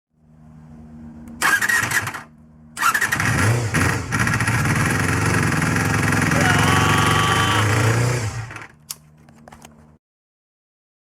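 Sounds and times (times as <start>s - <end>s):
motorcycle engine cranking and starting: 1.3s - 9.7s.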